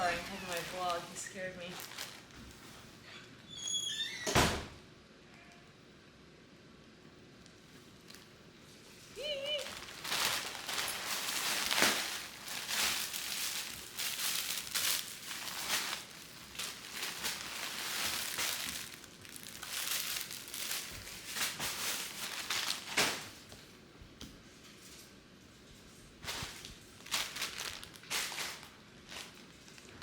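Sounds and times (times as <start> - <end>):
plastic packaging crinkling: 0.0 - 2.6, 7.6 - 23.5, 26.2 - 30.0.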